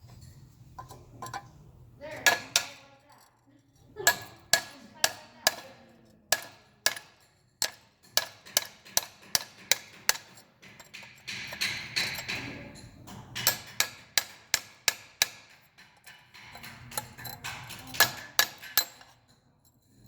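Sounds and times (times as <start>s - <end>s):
hammer knocking on metal: 6.3s - 15.6s.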